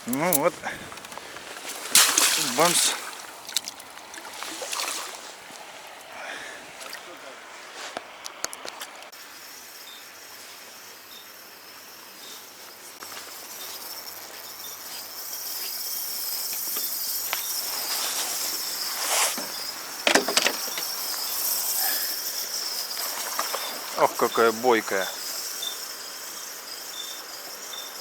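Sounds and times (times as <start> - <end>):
crickets trilling: 0.0 - 28.0
hiss: 9.2 - 28.0.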